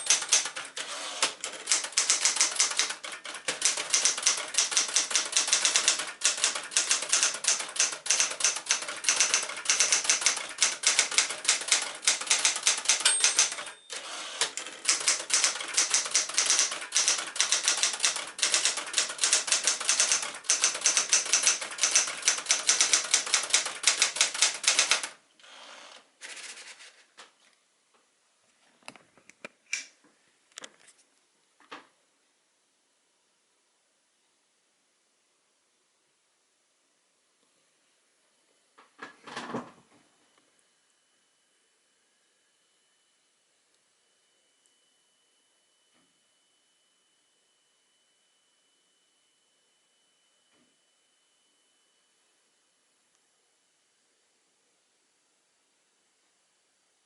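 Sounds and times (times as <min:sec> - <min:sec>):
manual typewriter typing: 0:00.0 - 0:25.2.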